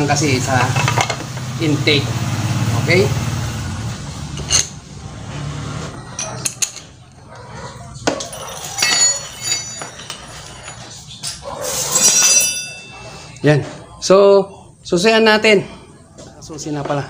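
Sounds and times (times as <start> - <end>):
metal tools clinking and knocking: 0.4 - 1.2, 4.3 - 4.8, 6.1 - 7.2, 8.0 - 13.4.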